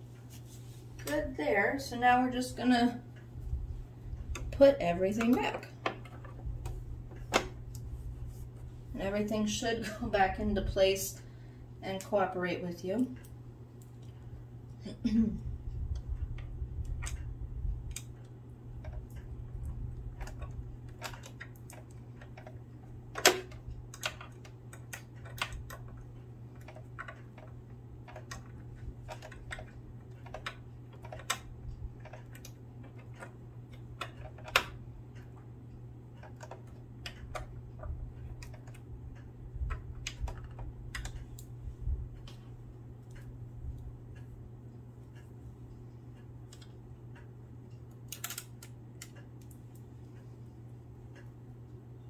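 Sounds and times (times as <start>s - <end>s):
steady low hum: 0.0s - 52.0s
small clicks and taps of parts: 15.9s - 41.5s, 46.2s - 50.3s.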